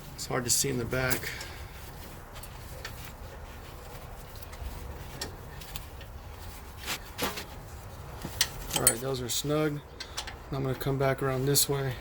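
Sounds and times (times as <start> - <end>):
lug wrench clicks: 10.0 - 10.4.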